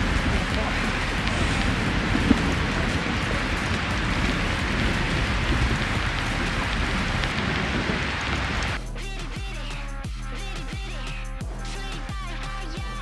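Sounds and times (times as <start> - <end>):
steady rushing outdoor noise: 0.0 - 8.8.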